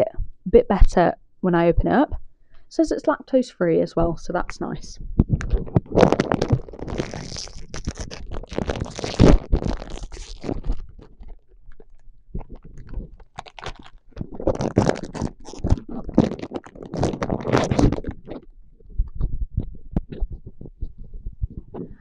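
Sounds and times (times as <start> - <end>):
packaging crinkling: 5.3 - 18.5.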